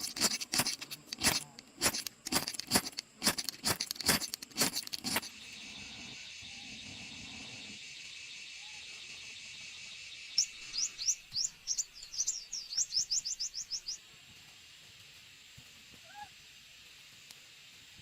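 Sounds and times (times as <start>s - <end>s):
insect drone: 0.0s - 18.0s
songbird singing: 5.0s - 14.0s.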